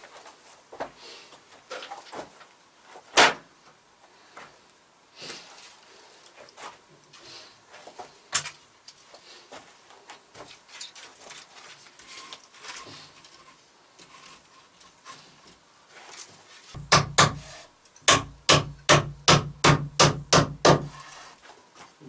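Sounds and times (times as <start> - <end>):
hammer driving nails into wood: 16.8 - 21.0.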